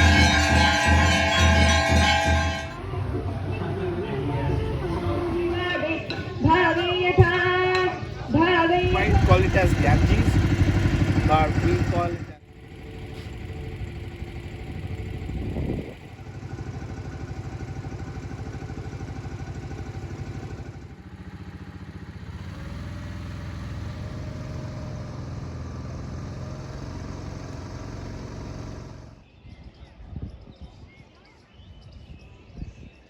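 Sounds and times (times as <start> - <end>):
vehicle engine running: 0.0 - 29.2.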